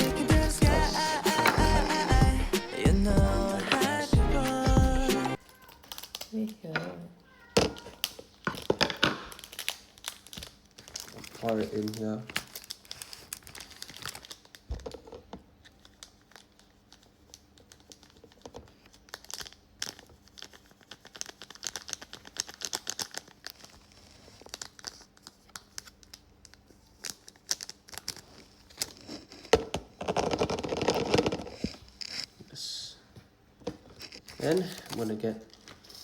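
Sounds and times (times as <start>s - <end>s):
plastic packaging crinkling: 5.4s - 6.8s, 7.7s - 32.3s, 33.8s - 36.0s.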